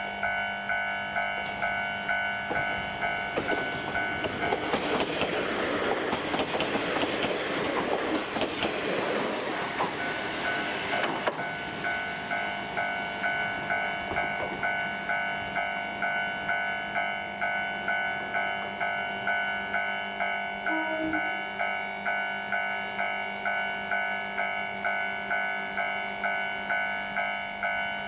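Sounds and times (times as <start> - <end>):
level-crossing alarm dinging: 0.0 - 8.2, 9.5 - 28.0
train wheels clattering on rails: 1.4 - 15.6.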